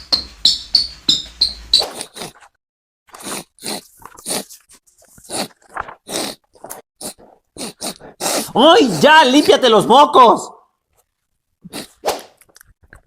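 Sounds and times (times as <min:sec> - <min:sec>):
open-mouthed chewing: 0:01.8 - 0:08.6
person sniffling wetly: 0:03.2 - 0:04.6, 0:05.2 - 0:09.0, 0:11.6 - 0:12.1.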